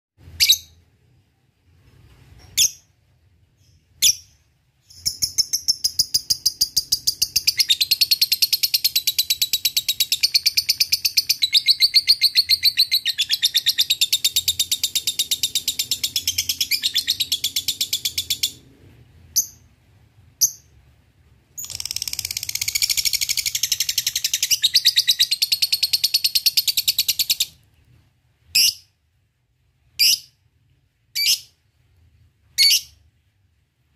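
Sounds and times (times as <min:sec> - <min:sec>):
lovebird chirps: 0:00.2 - 0:00.8, 0:02.4 - 0:18.7, 0:19.3 - 0:19.7, 0:20.4 - 0:20.8, 0:21.6 - 0:27.6, 0:28.4 - 0:29.0, 0:29.9 - 0:30.4, 0:31.1 - 0:31.6, 0:32.5 - 0:33.1.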